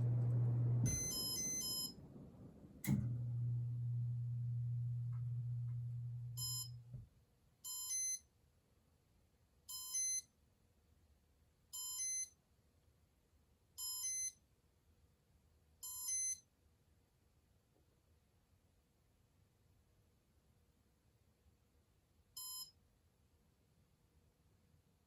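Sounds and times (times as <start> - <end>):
low electrical hum: 0.0 - 7.1
double electronic beeps: 0.9 - 1.9.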